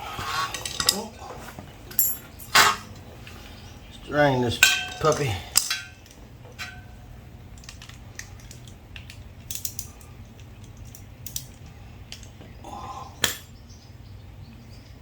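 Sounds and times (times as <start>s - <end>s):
low steady hum: 0.0s - 15.0s
metallic clicks and taps of tools: 7.6s - 12.5s.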